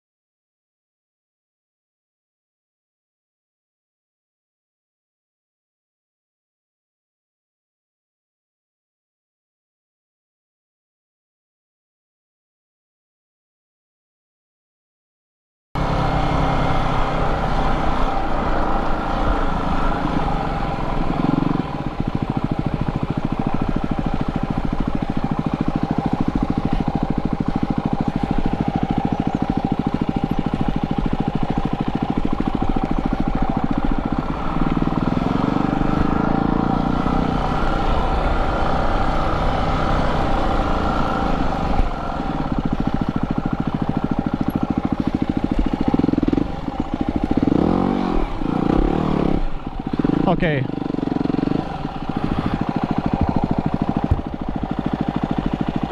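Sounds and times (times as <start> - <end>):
motorcycle engine revving: 15.8 - 55.9.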